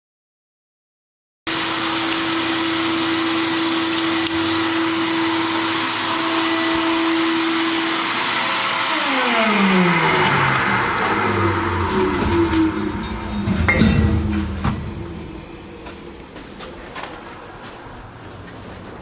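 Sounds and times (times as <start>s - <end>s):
low steady hum: 10.1s - 18.9s.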